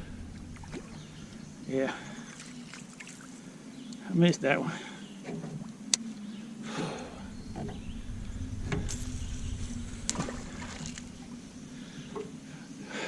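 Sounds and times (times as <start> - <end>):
low steady hum and rumble: 0.0 - 3.9, 5.7 - 12.9.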